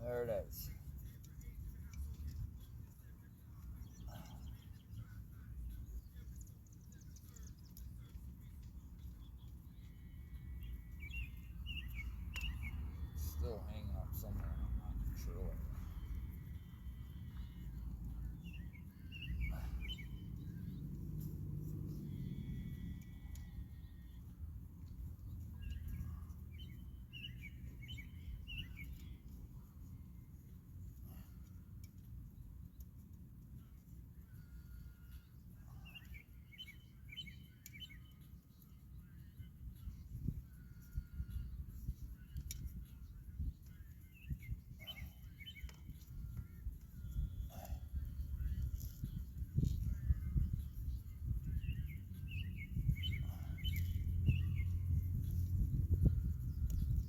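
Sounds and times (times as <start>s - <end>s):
bird chirping: 0.0s - 21.2s, 21.9s - 29.4s, 33.7s - 57.0s
low outdoor rumble: 0.0s - 35.0s, 41.0s - 57.0s
low background rumble: 39.3s - 57.0s.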